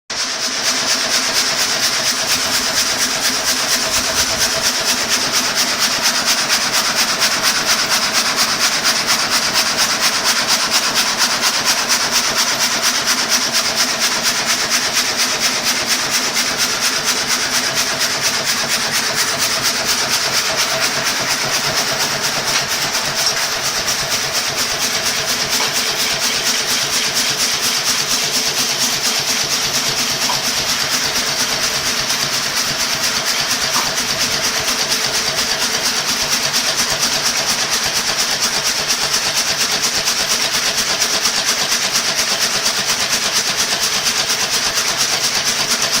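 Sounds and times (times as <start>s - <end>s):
conveyor scraping rattle: 0.2s - 46.0s
machine hum: 13.8s - 35.8s.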